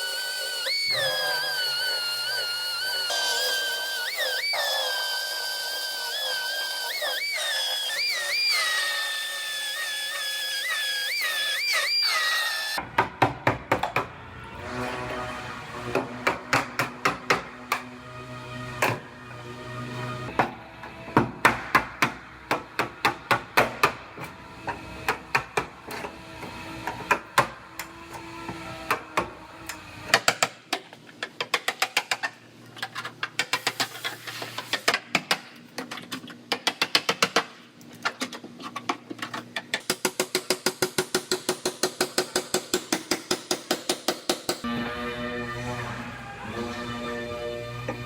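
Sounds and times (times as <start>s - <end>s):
background music: 14.1s - 26.4s, 44.6s - 48.0s.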